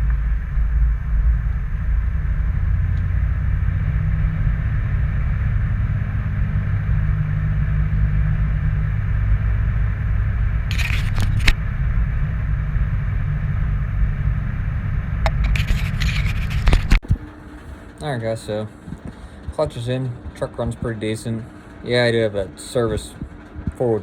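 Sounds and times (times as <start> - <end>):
diesel engine running: 0.0 - 24.0
scraping rattling noises: 10.6 - 11.6, 15.2 - 24.0.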